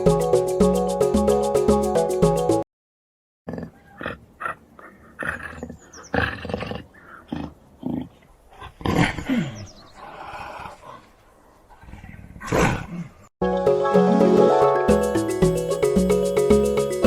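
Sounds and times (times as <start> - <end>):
cheerful background music: 0.0 - 2.6, 13.4 - 17.0
wild animal cries: 3.5 - 8.1.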